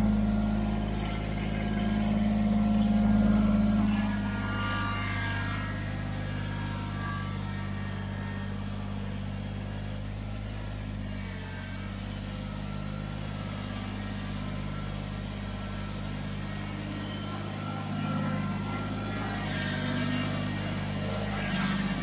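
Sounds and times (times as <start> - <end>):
tractor diesel engine running: 0.0 - 22.0.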